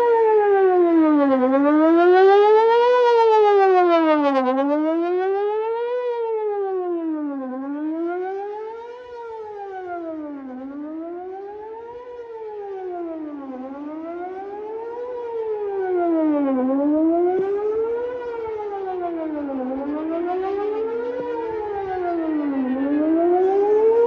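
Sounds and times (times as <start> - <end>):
faint echo of siren wail: 0.0 - 24.0
tornado warning siren wailing: 0.0 - 24.0.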